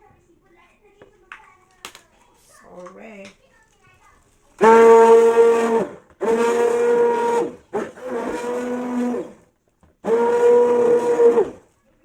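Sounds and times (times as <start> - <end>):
stick blender pulsing: 4.6 - 9.4, 10.0 - 11.7.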